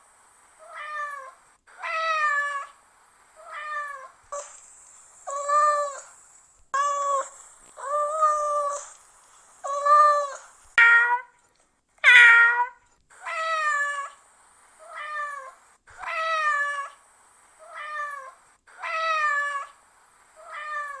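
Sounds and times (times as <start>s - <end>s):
cat meowing: 3.4s - 4.2s, 5.3s - 6.1s, 6.8s - 9.0s, 9.6s - 11.4s, 12.0s - 14.2s, 14.8s - 17.0s, 17.6s - 19.8s, 20.4s - 21.0s.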